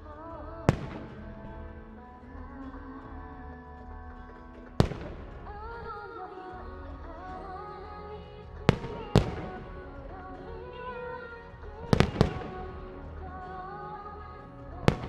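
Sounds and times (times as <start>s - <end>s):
pop song: 0.0s - 15.0s
firework shells bursting: 0.7s - 1.8s, 11.8s - 13.1s.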